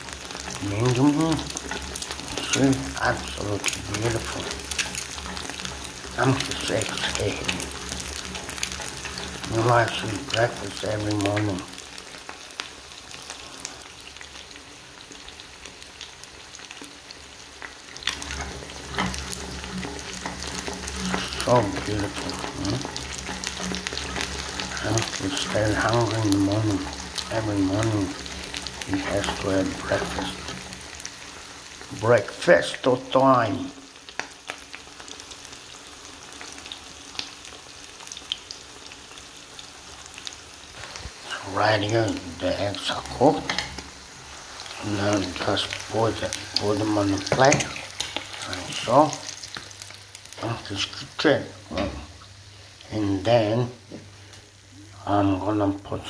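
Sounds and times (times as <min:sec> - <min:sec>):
eggs sizzling in a frying pan: 0:00.0 - 0:56.0.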